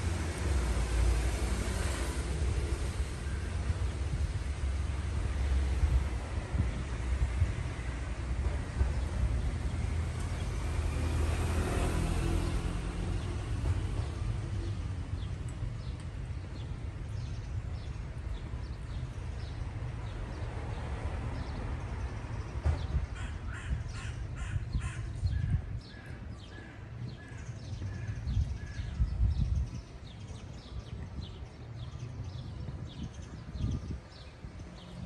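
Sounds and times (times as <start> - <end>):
traffic rumble: 0.0 - 35.0
vehicle passing: 9.6 - 15.0.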